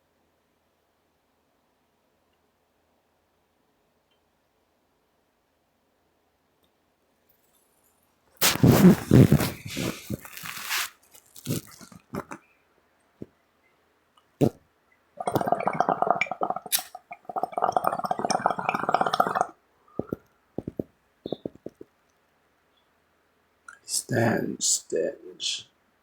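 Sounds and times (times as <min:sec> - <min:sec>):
bong water bubbling: 0:15.2 - 0:21.8.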